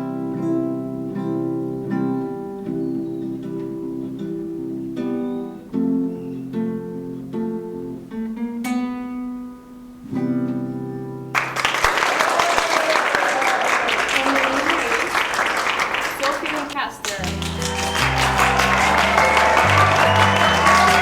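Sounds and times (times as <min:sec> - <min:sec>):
acoustic guitar: 0:00.0 - 0:11.6
applause: 0:11.4 - 0:21.0.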